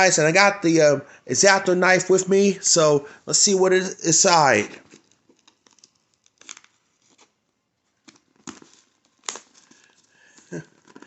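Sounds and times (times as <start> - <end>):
crinkling wrapping: 4.6 - 11.0.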